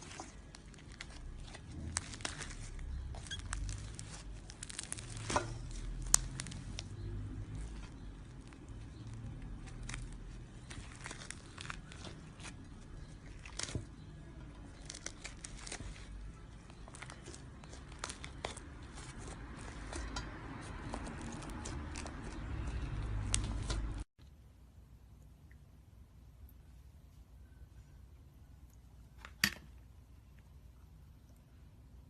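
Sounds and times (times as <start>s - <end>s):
slime crackling and popping: 0.0s - 23.8s.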